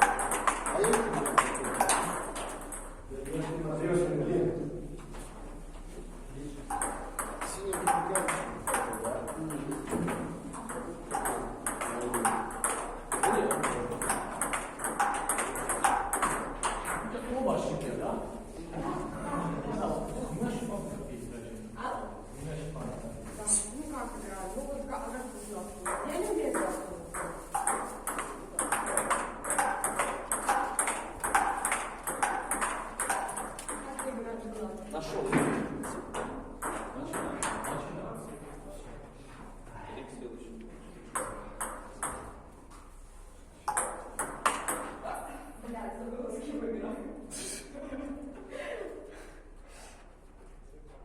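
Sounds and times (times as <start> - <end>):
table tennis ball hits: 0.0 - 3.0, 6.7 - 17.1, 25.8 - 34.2, 35.3 - 37.9, 41.1 - 42.4, 43.6 - 45.0.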